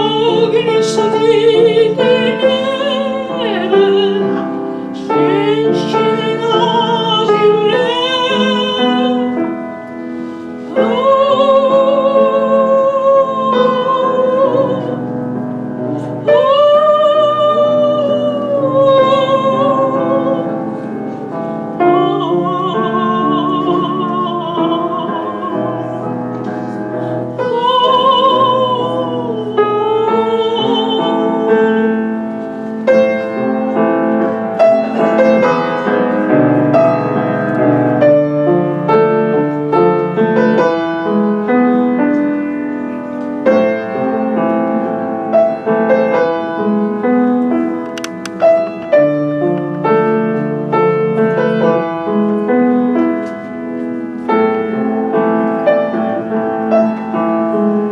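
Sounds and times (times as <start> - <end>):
piano accompaniment: 0.0 - 57.9
operatic singing with vibrato: 10.6 - 15.2, 16.2 - 26.2, 27.2 - 32.2.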